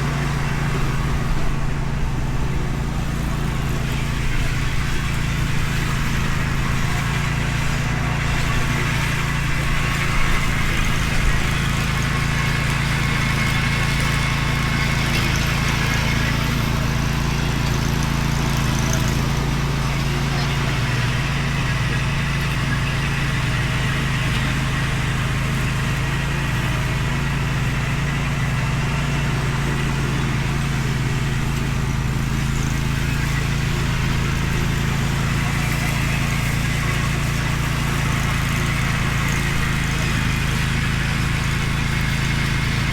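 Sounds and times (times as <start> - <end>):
mower engine running: 0.0 - 42.9.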